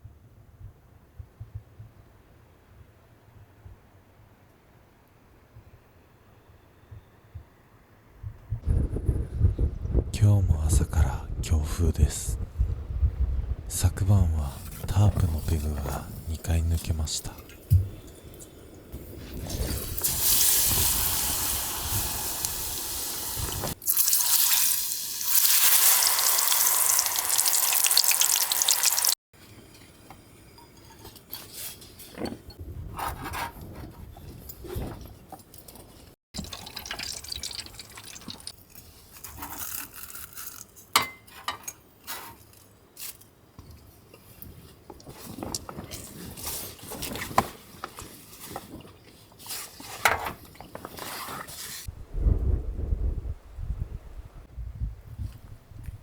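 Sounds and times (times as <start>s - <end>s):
water pouring: 19.3s - 29.2s, 36.4s - 38.6s.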